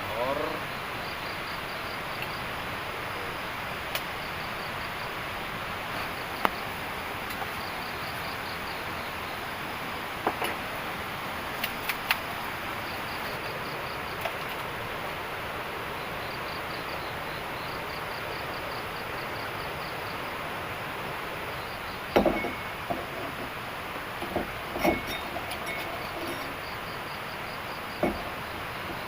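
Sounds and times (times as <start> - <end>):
cricket chirping: 0.0 - 29.0
steady hiss: 0.0 - 29.0
clatter of knocks: 22.1 - 23.5, 24.2 - 26.6, 28.0 - 29.0.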